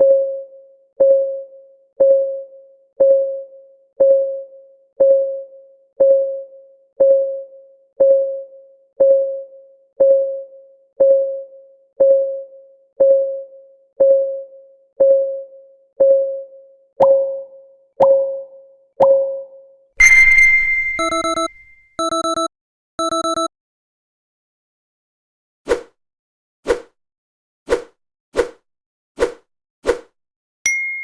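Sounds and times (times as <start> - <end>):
clock ticking: 20.9 - 23.5.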